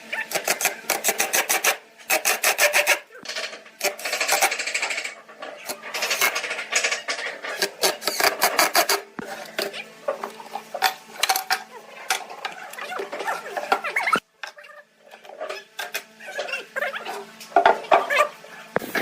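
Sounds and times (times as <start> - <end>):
hand tool rasping wood: 0.3 - 3.0.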